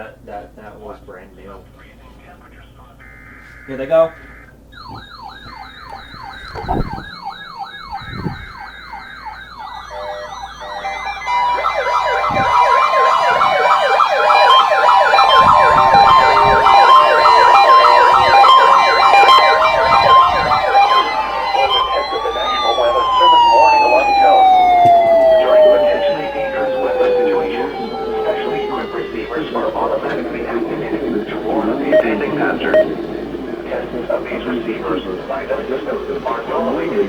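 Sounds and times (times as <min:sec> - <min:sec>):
steady alarm tone: 0:03.0 - 0:37.0
warbling siren alarms: 0:03.0 - 0:37.0.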